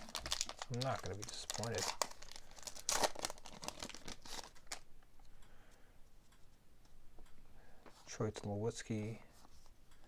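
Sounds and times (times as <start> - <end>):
cards rustling: 0.0 - 4.8
wrapper crinkling: 0.0 - 4.9.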